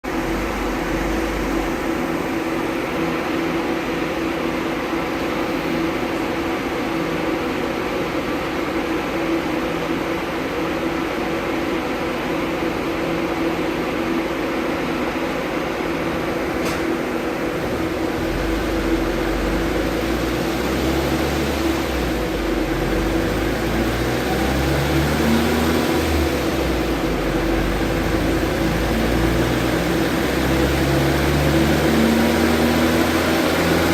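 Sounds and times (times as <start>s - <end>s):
engine and rollers droning: 0.0s - 4.1s, 17.4s - 33.9s.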